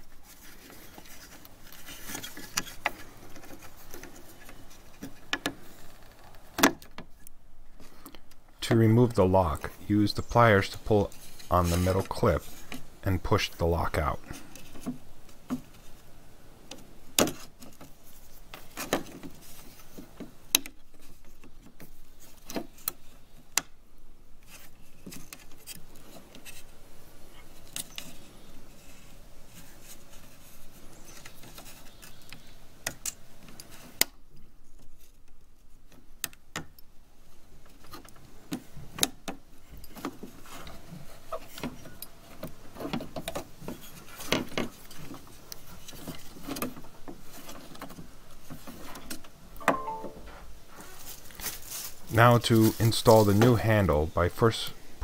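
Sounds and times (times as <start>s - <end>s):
handling noise: 37.6s - 54.5s.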